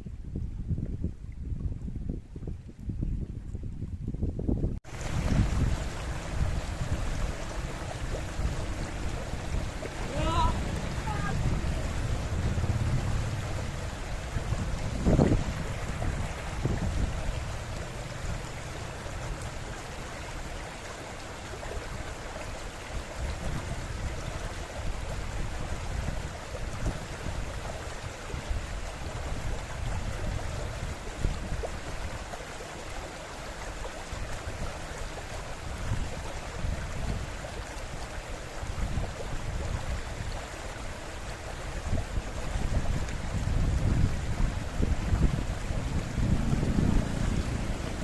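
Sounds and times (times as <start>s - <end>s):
river water flowing: 4.8s - 48.0s
low rumbles: 4.9s - 19.8s, 43.4s - 48.0s.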